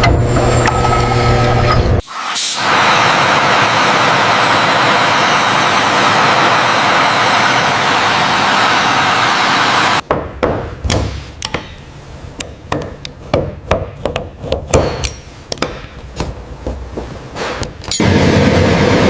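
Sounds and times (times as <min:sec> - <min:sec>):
loud steady rushing noise: 0:02.1 - 0:10.0, 0:18.0 - 0:19.0
hammer tapping on metal: 0:10.1 - 0:16.0.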